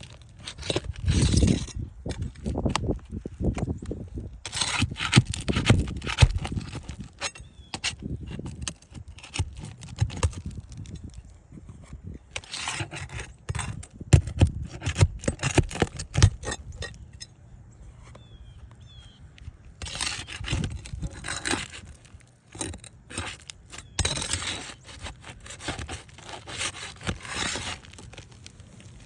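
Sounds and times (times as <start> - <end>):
shingles rustling: 0.0 - 17.2, 19.4 - 29.0
tool scraping and clicking: 4.4 - 17.3, 19.4 - 28.9.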